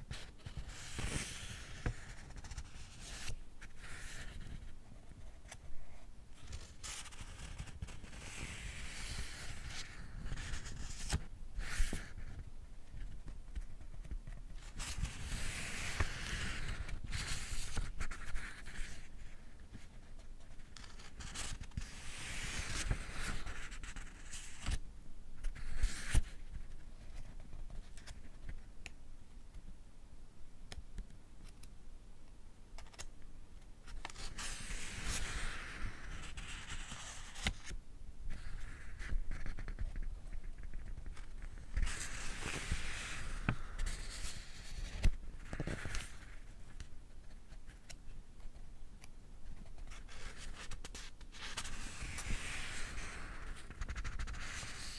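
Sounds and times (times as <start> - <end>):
book pages turning: 33.9 - 37.8.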